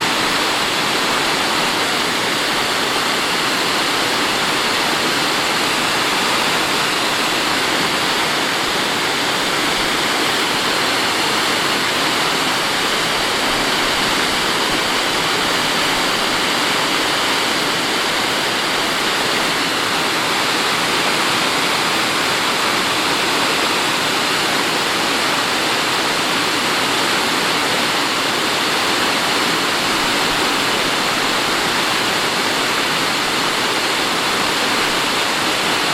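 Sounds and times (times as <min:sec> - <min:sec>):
stream rushing over rocks: 0:00.0 - 0:35.9.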